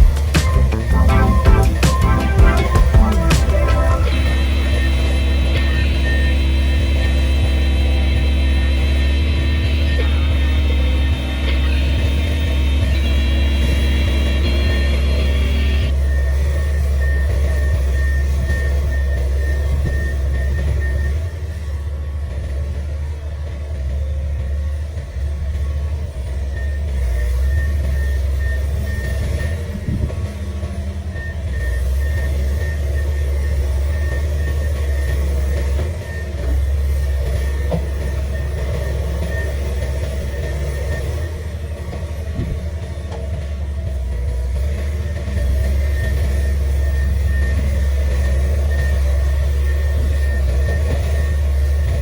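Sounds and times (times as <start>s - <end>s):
faint high tone: 0.0s - 5.8s
high hydraulic whine: 0.0s - 16.2s
excavator diesel engine running: 0.0s - 52.0s.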